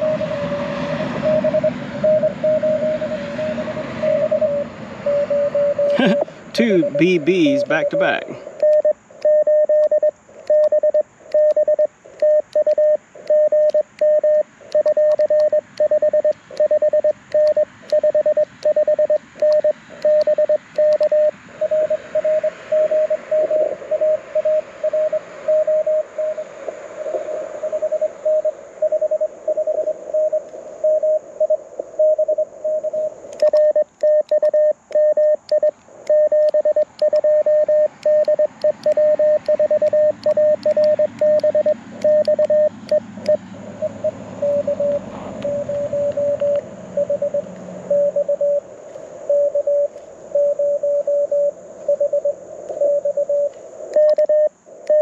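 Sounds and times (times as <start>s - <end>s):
morse code tone: 0.0s - 26.4s, 27.6s - 48.6s, 49.3s - 55.0s
radio band noise hiss: 5.7s - 9.2s, 35.6s - 55.0s.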